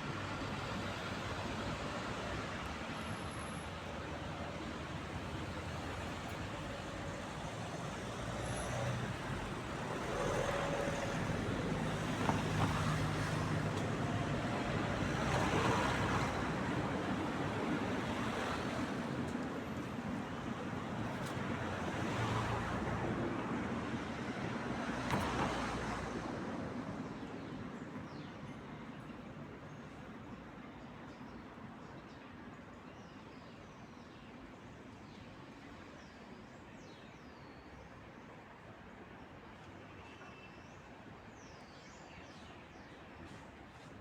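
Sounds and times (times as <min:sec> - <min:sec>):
vehicles passing by: 0:00.0 - 0:29.3.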